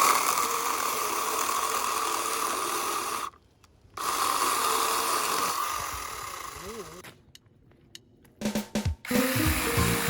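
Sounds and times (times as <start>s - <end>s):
cordless chainsaw whine: 4.0s - 7.0s, 9.1s - 10.0s.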